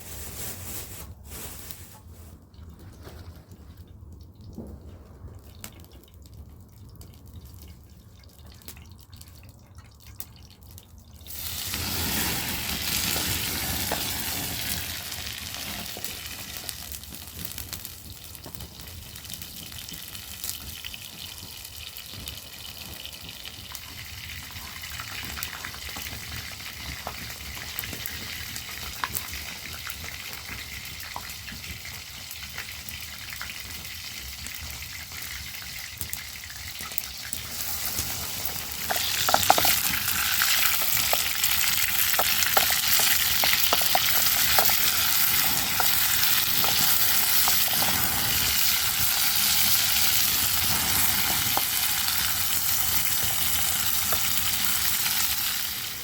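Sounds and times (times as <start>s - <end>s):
food sizzling in hot oil: 11.2s - 56.0s.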